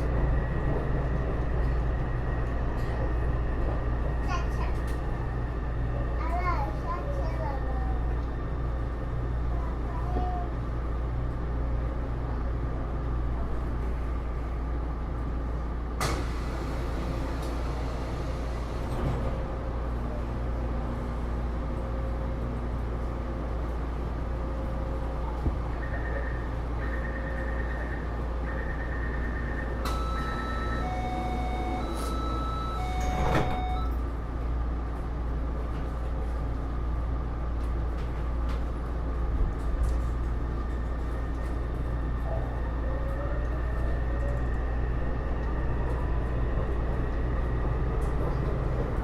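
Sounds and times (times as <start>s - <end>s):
metro car hum and rumble: 0.0s - 49.0s
short high beeps: 29.9s - 34.0s.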